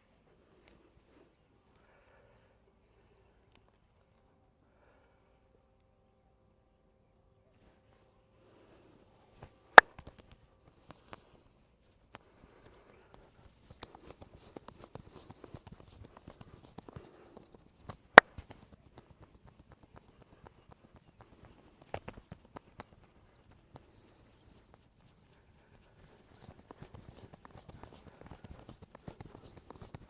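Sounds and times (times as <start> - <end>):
hands slapping in massage: 12.1 - 30.0.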